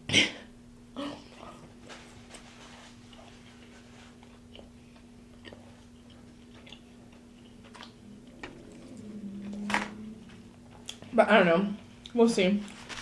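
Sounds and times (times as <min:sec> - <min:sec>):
closed-mouth hum: 0:00.0 - 0:12.2
person chewing food: 0:01.2 - 0:11.1.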